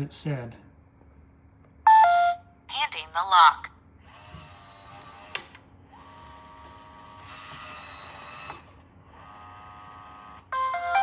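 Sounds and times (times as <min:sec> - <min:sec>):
lock motor whirring: 0:04.1 - 0:10.5.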